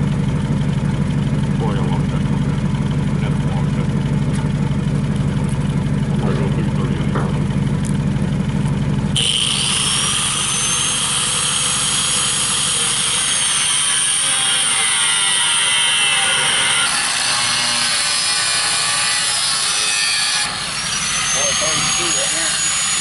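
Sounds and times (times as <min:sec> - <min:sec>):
angle grinder cutting steel: 0:09.2 - 0:23.0.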